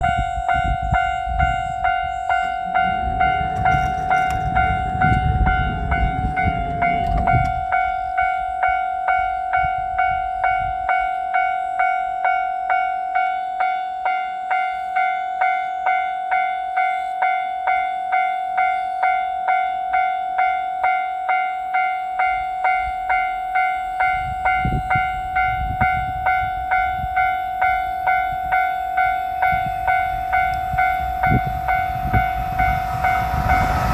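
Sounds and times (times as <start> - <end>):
level crossing warning bell: 0.0 - 33.9
low rumble: 29.1 - 33.9.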